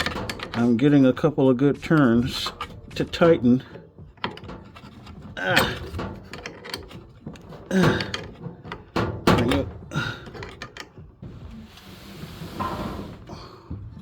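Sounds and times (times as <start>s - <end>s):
wrench clicks and knocks: 0.0s - 1.0s, 1.8s - 11.1s.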